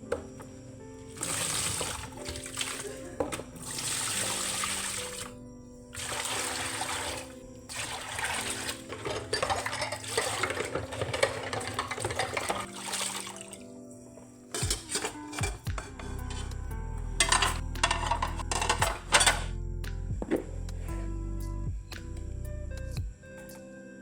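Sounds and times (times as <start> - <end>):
soft background music: 0.0 - 24.0
water running from a tap: 1.1 - 5.4, 6.0 - 13.8.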